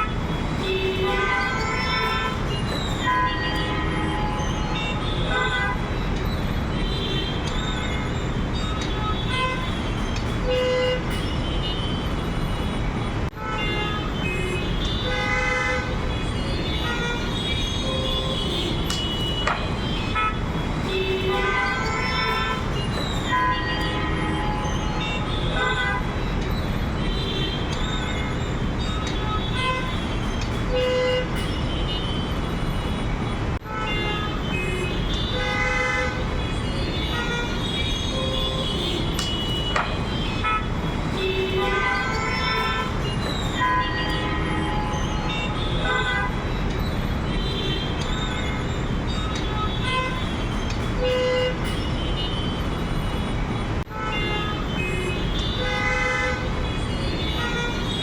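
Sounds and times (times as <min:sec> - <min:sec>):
vehicle horns honking: 0:00.0 - 0:12.2, 0:13.3 - 0:58.0.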